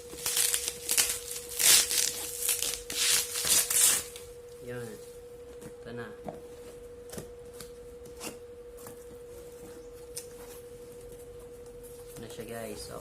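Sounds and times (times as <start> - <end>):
packaging rustling: 0.0 - 4.2
high-pitched hum: 0.0 - 13.0.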